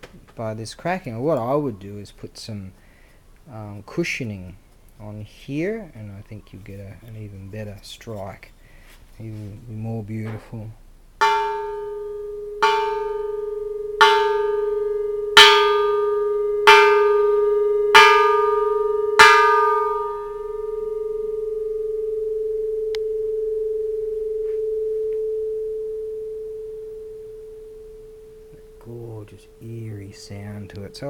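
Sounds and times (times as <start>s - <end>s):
deep bell hum: 11.2s - 31.0s
temple bell clanging: 11.2s - 31.0s.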